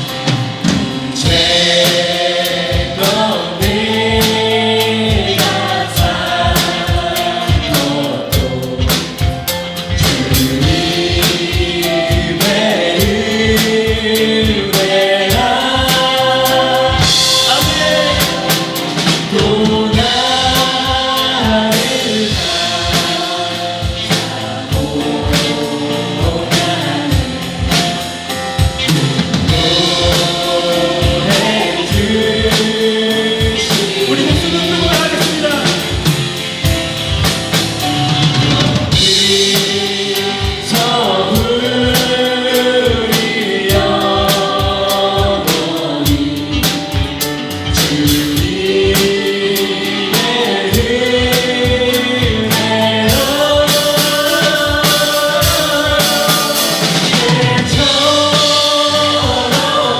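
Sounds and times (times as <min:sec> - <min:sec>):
band playing: 0:00.0 - 0:59.9
drum kit beat: 0:00.0 - 0:59.9
voices singing together: 0:00.0 - 0:59.9.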